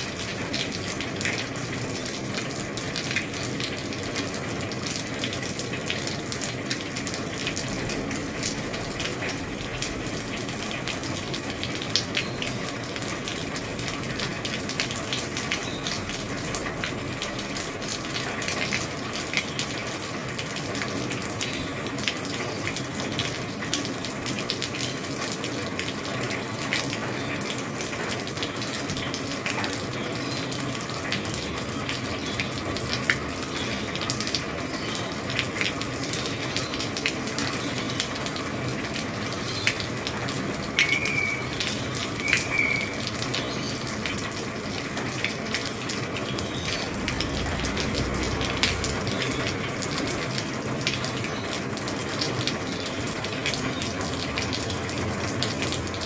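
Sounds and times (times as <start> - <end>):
rain on a roof: 0.0 - 56.0
raindrop ticks: 0.0 - 56.0.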